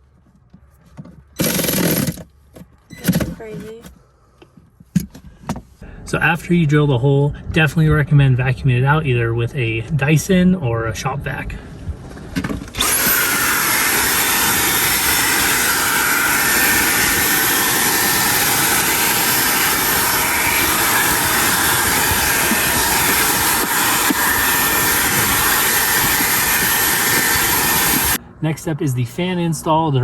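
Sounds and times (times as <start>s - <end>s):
vacuum cleaner running: 12.7s - 28.2s.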